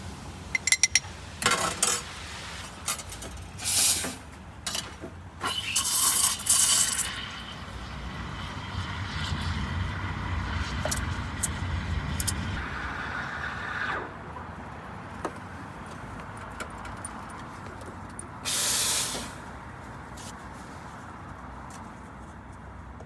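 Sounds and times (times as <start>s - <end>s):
steam wand steaming milk: 1.0s - 14.1s, 18.5s - 19.5s
blast of steam: 1.2s - 4.3s, 5.4s - 14.1s, 18.4s - 19.6s.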